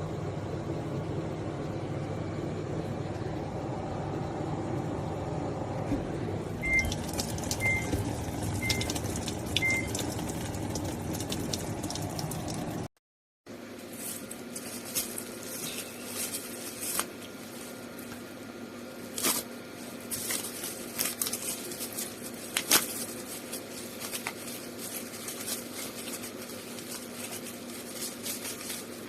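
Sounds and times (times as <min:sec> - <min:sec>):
steady hum: 0:00.0 - 0:12.9
washing machine water sloshing: 0:06.4 - 0:12.9.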